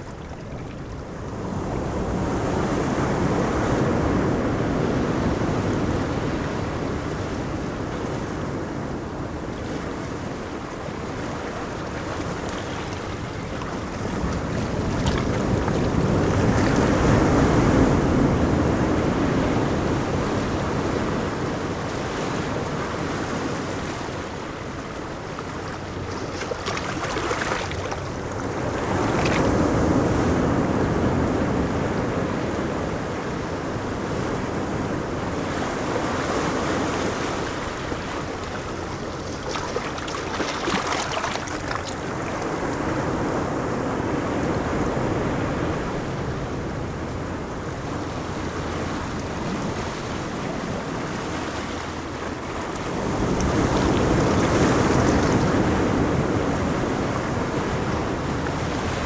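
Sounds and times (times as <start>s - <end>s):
ocean waves breaking: 0.0s - 59.0s
wind noise on microphone: 0.0s - 59.0s.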